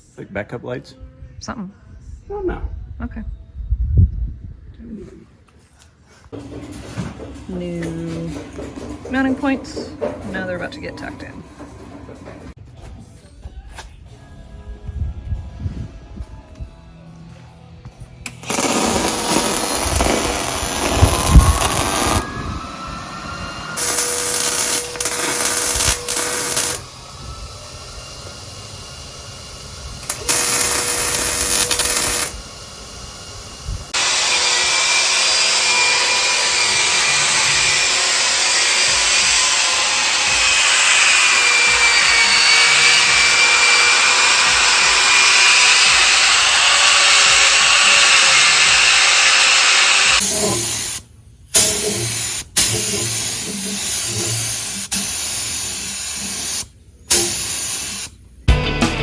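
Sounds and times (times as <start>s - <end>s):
handheld power tool running: 6.4s - 12.6s, 18.3s - 51.0s.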